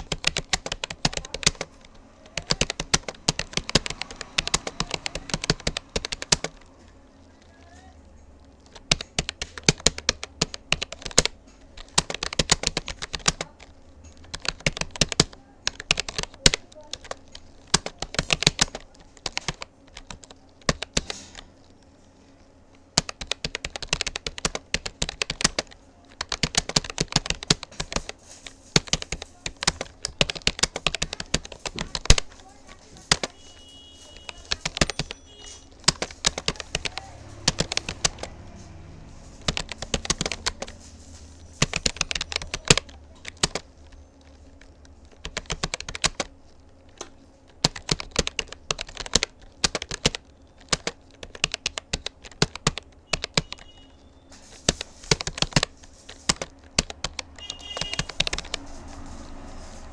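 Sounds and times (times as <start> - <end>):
keyboard key clicks: 33.0 - 40.8, 41.6 - 43.6, 47.0 - 53.8, 54.6 - 58.7.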